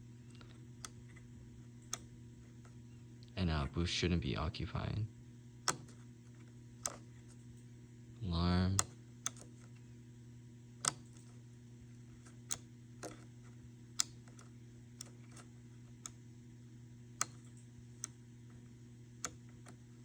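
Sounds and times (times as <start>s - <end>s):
low steady hum: 0.0s - 20.0s
sharp small clicks: 8.8s - 9.8s, 10.8s - 11.4s, 12.2s - 16.2s, 17.2s - 18.2s.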